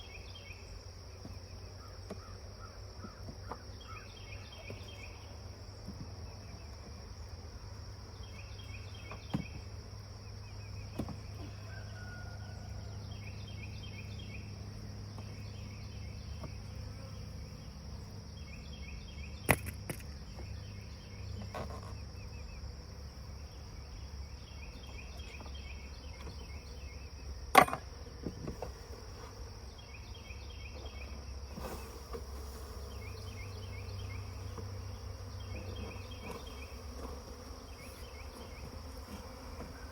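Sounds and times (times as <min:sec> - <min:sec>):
bee swarm buzzing: 0:27.9 - 0:39.9.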